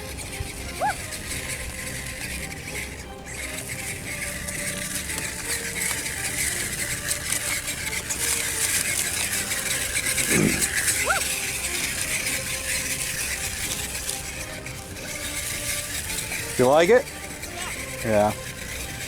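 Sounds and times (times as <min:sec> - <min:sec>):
toy car rattling over rocks: 0:00.0 - 0:19.0
swooping sound: 0:10.2 - 0:11.4.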